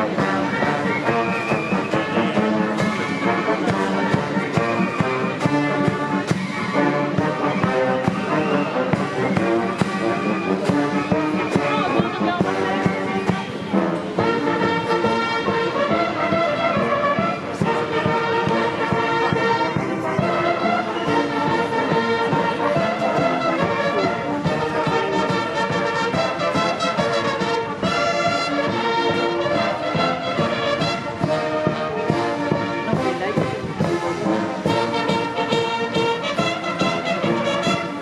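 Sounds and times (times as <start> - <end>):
military brass band playing: 0.0 - 38.0
steady drum beat: 17.6 - 38.0.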